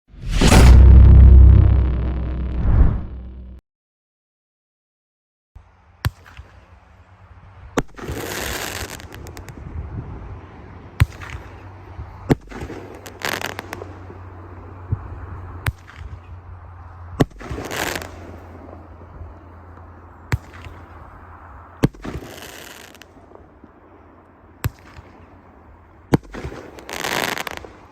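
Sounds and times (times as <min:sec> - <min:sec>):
fireworks bangs: 0:00.1 - 0:03.3, 0:12.3 - 0:16.4, 0:17.2 - 0:27.9
fireworks crackling hiss: 0:08.0 - 0:09.5, 0:12.6 - 0:14.8, 0:17.4 - 0:18.5, 0:22.0 - 0:23.1, 0:26.2 - 0:27.9.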